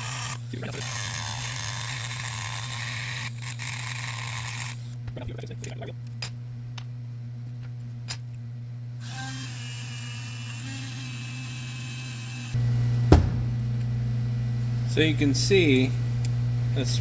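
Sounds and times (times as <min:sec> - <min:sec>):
rotary tool humming: 0:00.0 - 0:06.3, 0:09.0 - 0:12.6
sharp knock: 0:13.1 - 0:13.6.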